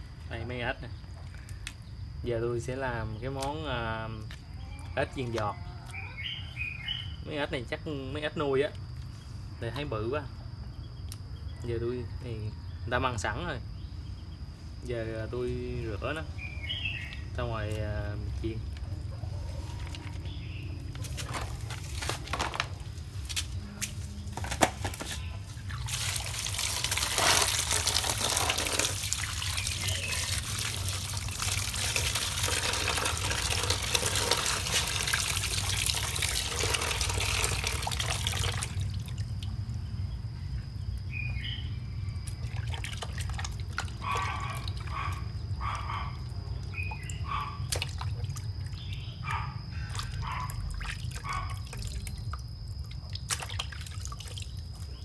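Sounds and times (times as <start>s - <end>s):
water drips and splashes: 24.8s - 39.9s, 42.0s - 49.1s, 49.8s - 55.0s
water running from a tap: 25.7s - 38.9s.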